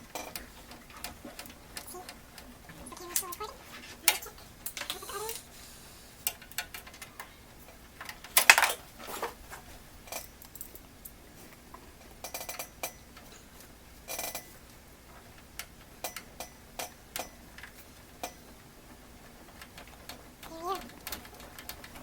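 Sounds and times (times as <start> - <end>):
clicks and taps of computer parts: 15.6 - 18.4.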